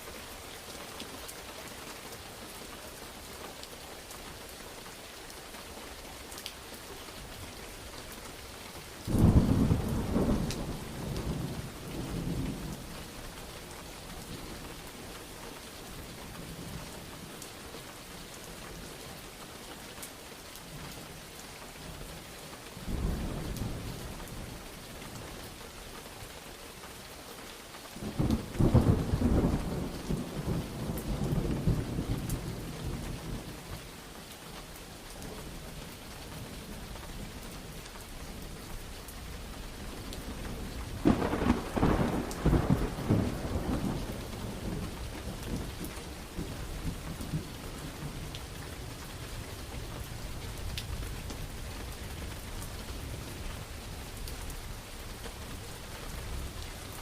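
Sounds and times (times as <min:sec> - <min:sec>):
steady rain falling: 0:00.0 - 0:57.0
thunder rumbling: 0:09.1 - 0:12.9, 0:28.0 - 0:33.5, 0:39.8 - 0:49.0.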